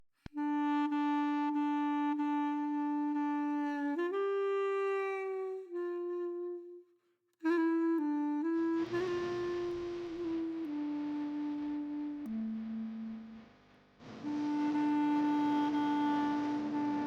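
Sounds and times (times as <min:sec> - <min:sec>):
melody of long held notes: 0:00.4 - 0:06.6, 0:07.4 - 0:17.0
fuller noisy accompaniment: 0:08.6 - 0:17.0.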